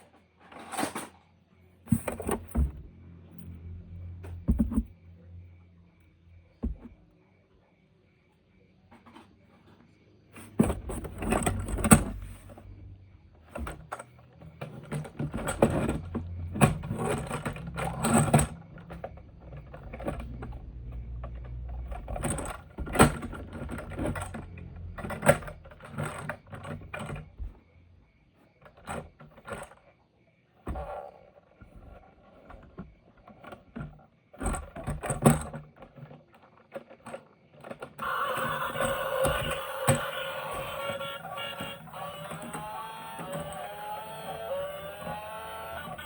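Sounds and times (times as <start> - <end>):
toy vehicles knocking and clicking: 1.8 - 5.0, 10.4 - 27.7, 28.6 - 30.0, 30.6 - 46.0
small wheels rolling rumble: 10.5 - 27.6, 30.7 - 46.0.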